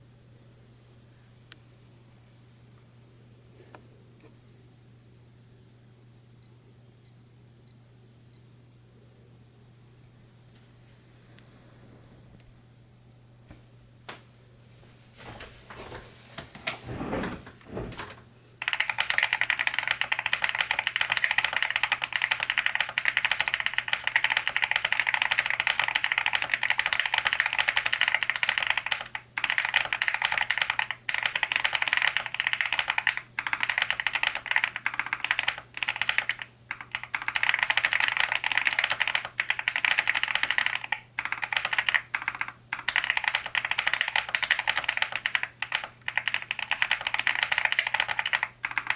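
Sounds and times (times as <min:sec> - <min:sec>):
fast typing on mechanical keyboard: 0:18.6 - 0:48.9.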